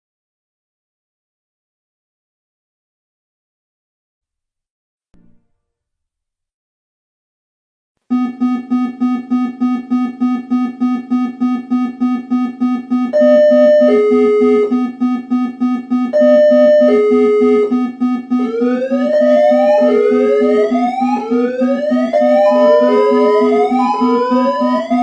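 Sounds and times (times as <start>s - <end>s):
pulsing low alarm buzz: 8.1s - 25.0s
higher two-note descending tone: 18.9s - 25.0s.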